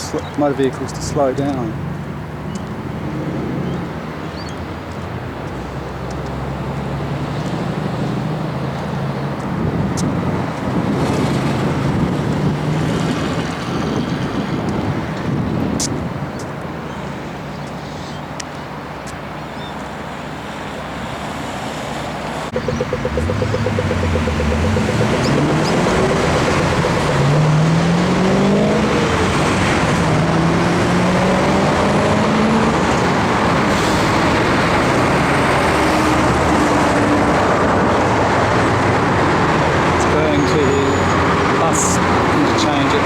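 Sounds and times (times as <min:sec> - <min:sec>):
passing road traffic: 0:00.0 - 0:43.0
vehicle accelerating through gears: 0:00.9 - 0:04.5, 0:06.0 - 0:14.5, 0:22.5 - 0:43.0.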